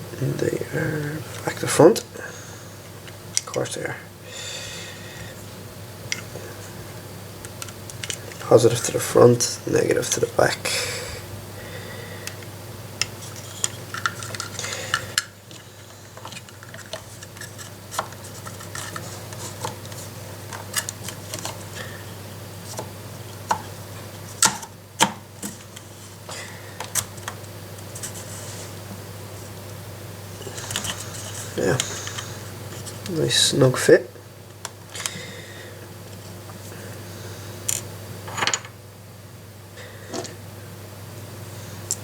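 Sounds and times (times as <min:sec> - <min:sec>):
steady low hum: 0:00.0 - 0:42.0
hands handling plastic parts: 0:07.4 - 0:08.9, 0:12.2 - 0:21.8, 0:30.4 - 0:33.2.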